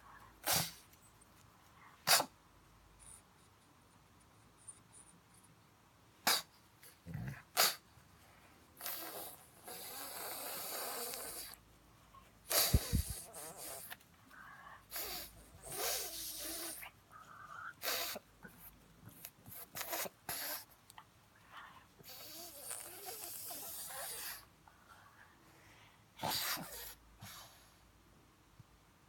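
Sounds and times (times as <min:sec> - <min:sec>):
dog sneezing: 0:00.4 - 0:00.9, 0:02.0 - 0:02.4, 0:06.2 - 0:06.6, 0:07.5 - 0:07.8, 0:12.5 - 0:13.9, 0:14.9 - 0:16.8, 0:17.8 - 0:18.2, 0:19.5 - 0:20.7, 0:26.2 - 0:27.4
dog raspy breathing: 0:12.4 - 0:20.7.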